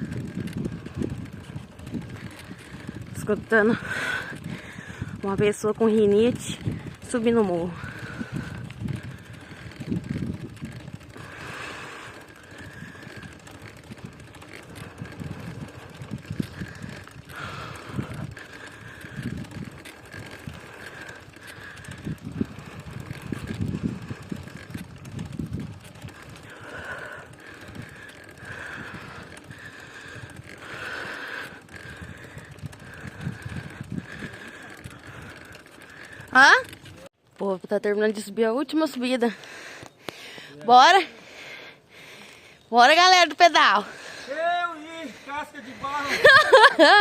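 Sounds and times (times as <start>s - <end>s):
heavy congested breathing: 0.0s - 5.2s, 7.6s - 25.0s, 25.8s - 37.0s, 39.2s - 42.7s, 43.7s - 46.3s
wind on microphone: 0.0s - 37.0s
bicycle rumble on dirt road: 0.0s - 47.0s.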